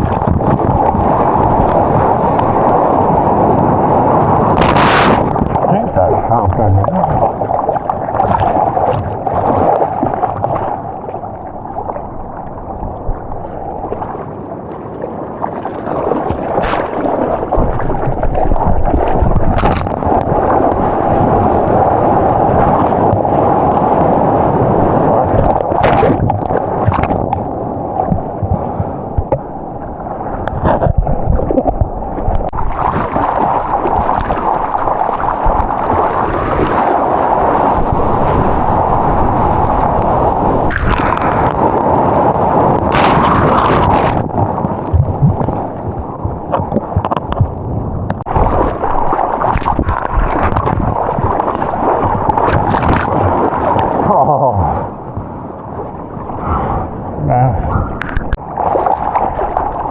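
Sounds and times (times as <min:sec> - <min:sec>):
ocean water sloshing and rushing: 0:00.0 - 0:59.9
sharp water splashes: 0:04.5 - 0:10.9, 0:15.5 - 0:23.8, 0:25.2 - 0:29.7, 0:32.5 - 0:42.0, 0:48.2 - 0:54.1, 0:58.0 - 0:59.9.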